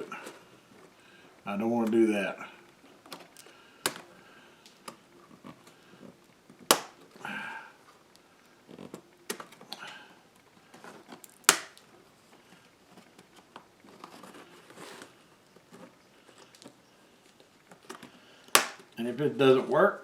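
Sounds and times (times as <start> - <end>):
loud plastic snap: 6.7 - 7.0, 11.3 - 11.8, 18.5 - 19.0.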